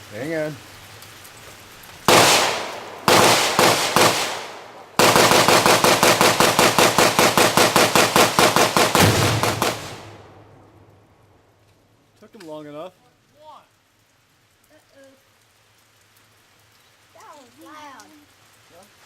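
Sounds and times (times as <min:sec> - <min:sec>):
rifle shots: 0:02.1 - 0:10.6.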